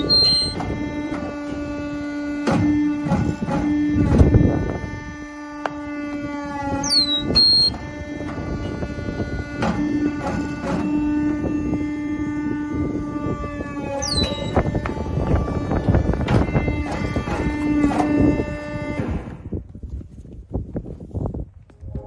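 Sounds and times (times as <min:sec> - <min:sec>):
high falling squeal: 0:00.0 - 0:00.6, 0:06.8 - 0:07.8, 0:14.0 - 0:14.8
machine motor humming with knocks: 0:00.0 - 0:19.6.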